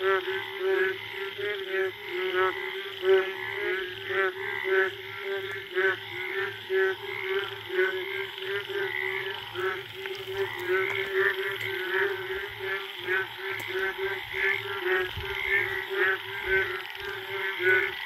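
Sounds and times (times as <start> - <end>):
frogs calling: 0.0 - 18.0.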